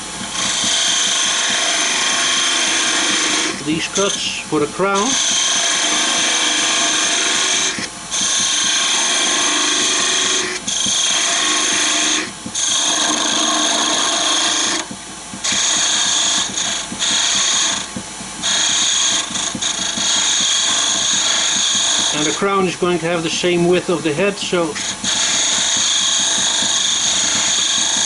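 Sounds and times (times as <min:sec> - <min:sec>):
lathe tool cutting wood: 0:00.0 - 0:28.0.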